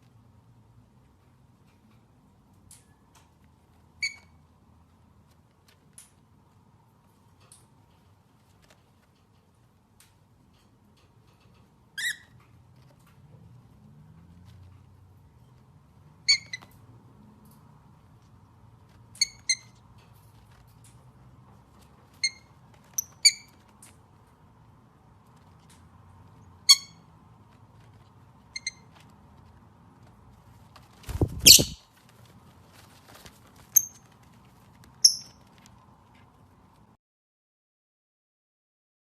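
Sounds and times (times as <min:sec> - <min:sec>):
parrot squeaking and chirping: 0:03.9 - 0:04.4, 0:11.9 - 0:12.5, 0:16.2 - 0:16.8, 0:19.1 - 0:19.9, 0:22.1 - 0:23.7, 0:26.4 - 0:27.1, 0:28.4 - 0:29.0, 0:31.1 - 0:31.8, 0:33.7 - 0:34.1, 0:35.0 - 0:35.4.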